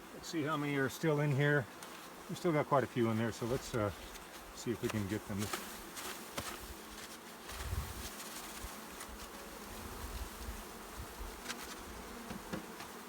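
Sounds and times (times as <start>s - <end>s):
honeybees buzzing: 0.0s - 13.0s.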